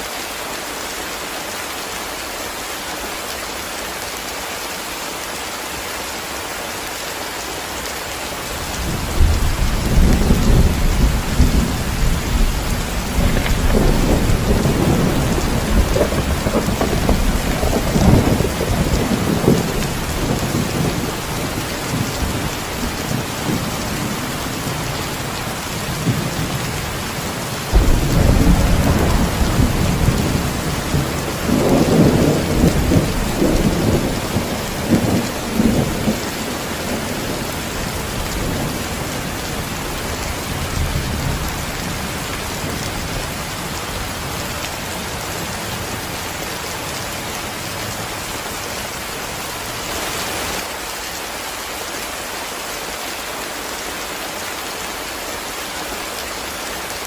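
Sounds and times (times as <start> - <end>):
heavy rain hissing: 0.0 - 57.0
thunder rumbling: 8.7 - 44.4
sharp thunder peal: 27.7 - 34.2.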